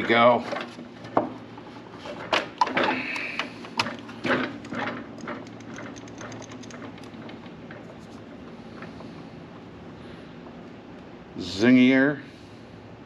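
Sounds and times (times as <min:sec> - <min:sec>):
small parts clicking and rattling: 0:02.7 - 0:07.4.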